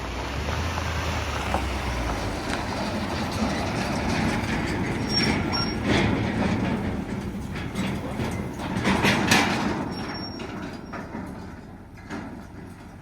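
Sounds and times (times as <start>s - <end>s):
vehicle engine rumble: 0.0s - 13.0s
loose metallic rattling: 2.2s - 13.0s.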